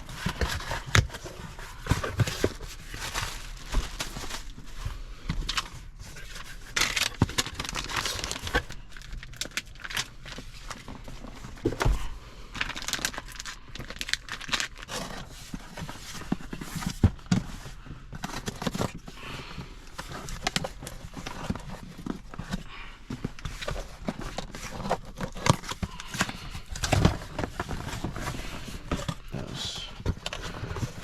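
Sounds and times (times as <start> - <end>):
plastic wrapping crinkling: 0.0 - 17.5.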